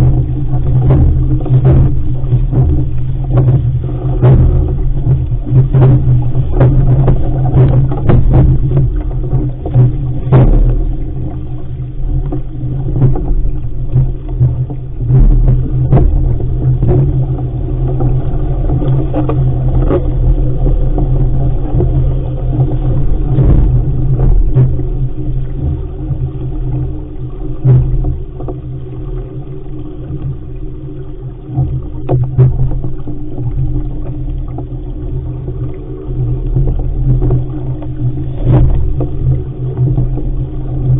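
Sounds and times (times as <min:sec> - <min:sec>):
knocks and slaps from hull: 0:00.0 - 0:21.1
wind buffeting microphone: 0:00.0 - 0:26.4.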